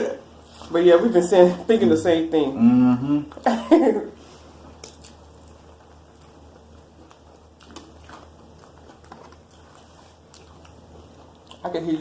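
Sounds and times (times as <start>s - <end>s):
low steady hum: 0.0s - 12.0s
chewing food: 4.6s - 12.0s
mouth clicks and smacks: 4.8s - 6.4s.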